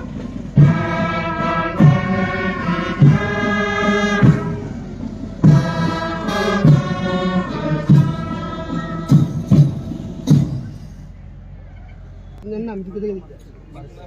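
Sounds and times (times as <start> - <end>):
band playing held chords: 0.0 - 11.5.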